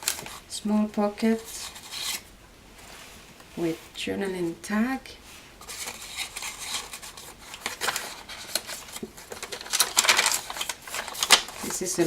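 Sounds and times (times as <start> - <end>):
paper rustling and crackling: 0.0 - 0.4, 5.6 - 12.0.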